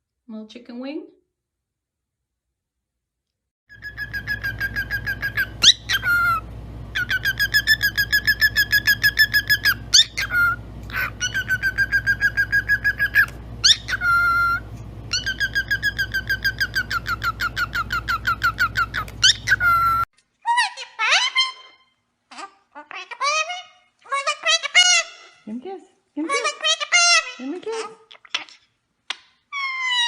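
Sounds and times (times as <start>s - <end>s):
parrot whistling: 3.7s - 21.9s, 29.5s - 30.0s
parrot chirping: 3.7s - 25.5s, 26.2s - 30.0s.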